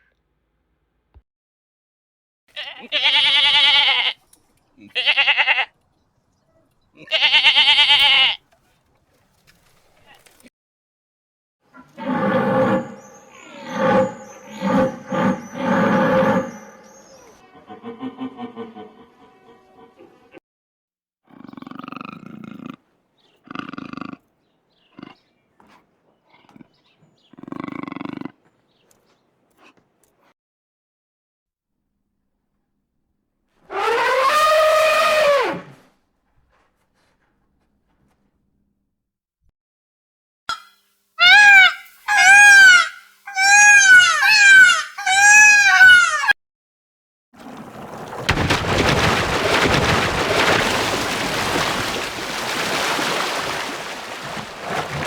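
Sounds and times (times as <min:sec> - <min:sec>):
farm animal calling: 0:02.5 - 0:04.2, 0:04.8 - 0:05.8, 0:06.5 - 0:08.5, 0:11.8 - 0:20.2, 0:21.4 - 0:28.4, 0:40.5 - 0:46.3
goat bleating: 0:02.5 - 0:04.2, 0:04.8 - 0:05.7, 0:07.0 - 0:08.4.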